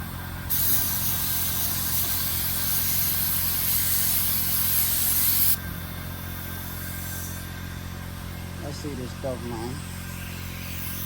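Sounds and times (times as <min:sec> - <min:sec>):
steady low hum: 0:00.0 - 0:11.0
spray gun hissing: 0:00.1 - 0:05.6.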